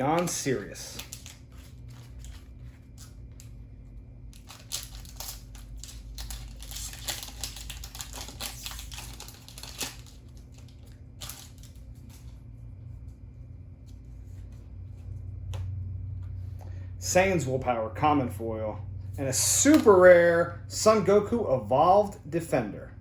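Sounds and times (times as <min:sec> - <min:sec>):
wrapper crinkling and tearing: 0:00.0 - 0:03.5, 0:04.3 - 0:12.3
cards handled: 0:00.0 - 0:03.6, 0:19.6 - 0:19.9.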